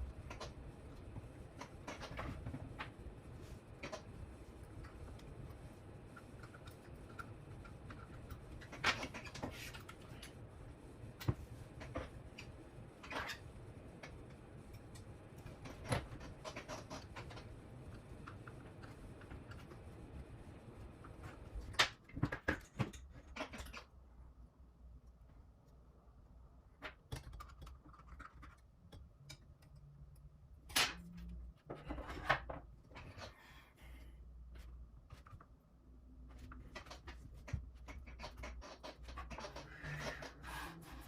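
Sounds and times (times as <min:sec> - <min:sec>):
steady low hum: 0:00.0 - 0:41.0
small parts clicking and tapping: 0:26.8 - 0:31.1, 0:36.3 - 0:40.4.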